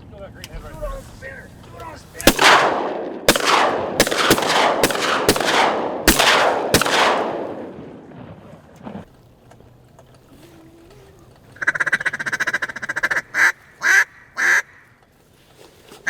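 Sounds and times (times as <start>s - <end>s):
shotgun shots echoing: 2.2s - 8.5s.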